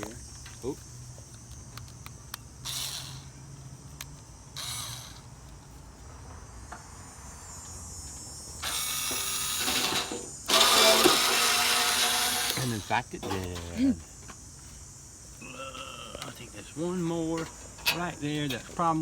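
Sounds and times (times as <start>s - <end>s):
cicadas buzzing: 0.0s - 19.0s
power driver removing screw: 8.6s - 13.6s.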